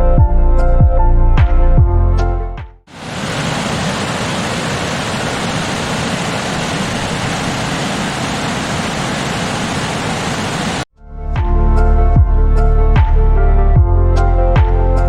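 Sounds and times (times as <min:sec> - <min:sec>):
waterfall rushing: 0:02.9 - 0:10.8.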